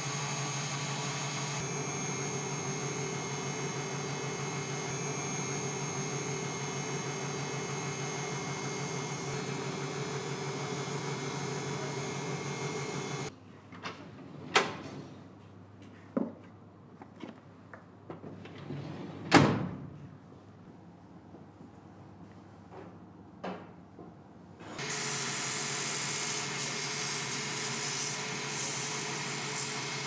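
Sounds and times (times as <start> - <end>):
electric motor hum with whining: 0.0 - 13.3, 24.6 - 30.0.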